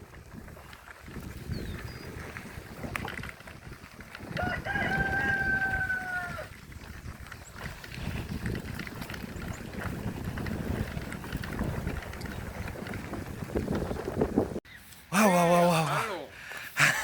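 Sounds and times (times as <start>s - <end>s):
wind rumble on microphone: 0.0s - 14.6s
rooster crowing: 4.4s - 6.5s.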